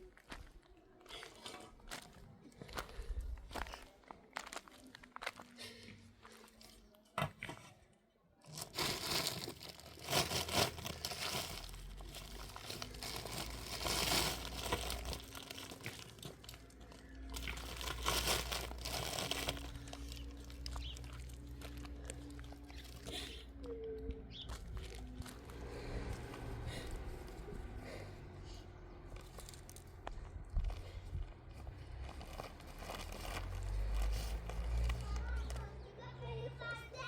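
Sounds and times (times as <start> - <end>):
rustling and crinkling: 8.4 - 27.7, 28.9 - 35.7.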